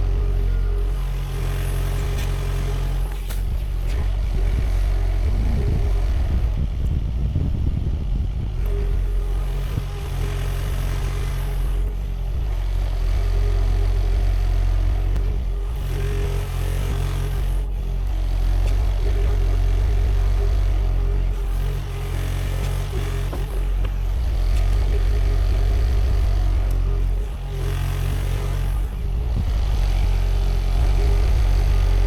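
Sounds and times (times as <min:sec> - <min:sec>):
excavator diesel engine running: 0:00.0 - 0:32.0.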